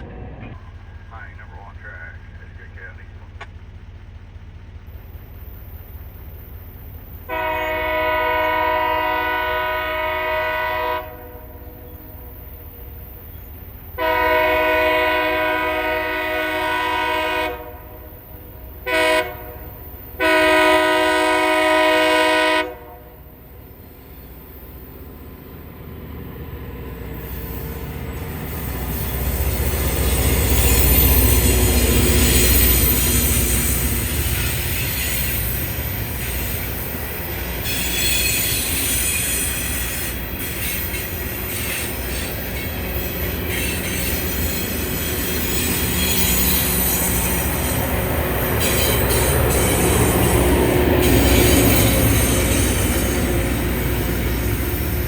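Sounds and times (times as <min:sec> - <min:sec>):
train rumble: 0:00.0 - 0:55.0
locomotive air horn blasts: 0:07.3 - 0:12.4, 0:14.0 - 0:23.4.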